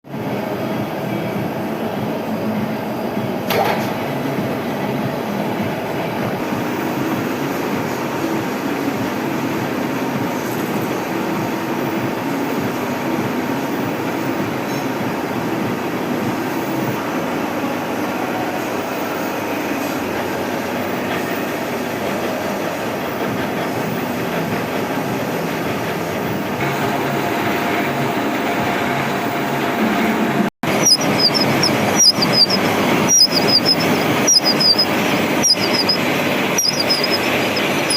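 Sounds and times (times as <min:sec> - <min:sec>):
milling machine running: 0:30.2 - 0:37.9
sharp clicks with high squeaks: 0:30.7 - 0:37.9.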